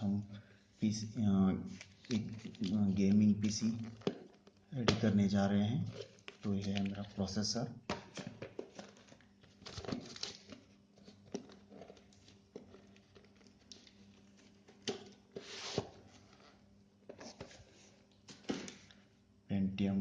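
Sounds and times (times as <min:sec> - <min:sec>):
packaging rustle: 0:08.1 - 0:16.4.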